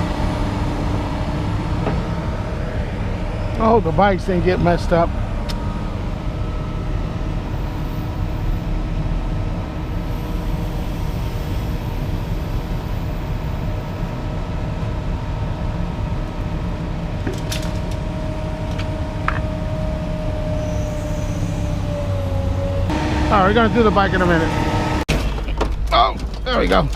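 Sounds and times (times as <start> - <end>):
vehicle engine rumbling: 0.0 - 26.9
steady whine: 22.6 - 25.1.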